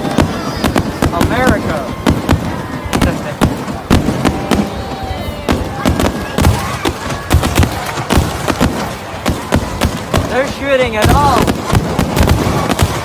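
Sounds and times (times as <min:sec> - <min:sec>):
fireworks bangs and pops: 0:00.0 - 0:13.0
fireworks whistling: 0:00.0 - 0:13.0.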